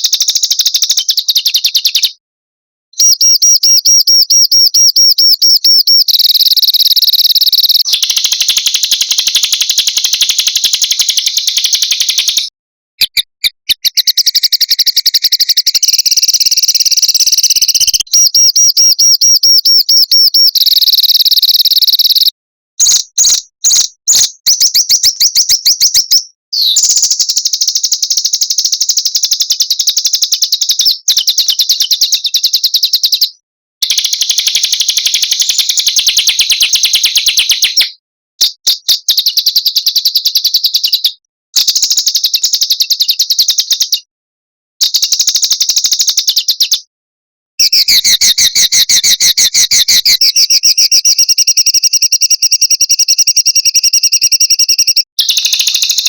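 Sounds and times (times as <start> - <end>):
songbird trilling: 3.0 - 8.5, 10.6 - 28.9, 54.7 - 56.0.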